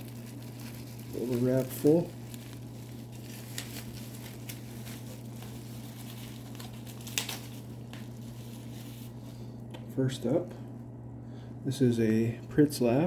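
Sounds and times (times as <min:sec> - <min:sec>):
hands rustling wrapping: 0:00.0 - 0:09.9
steady low hum: 0:00.0 - 0:13.0.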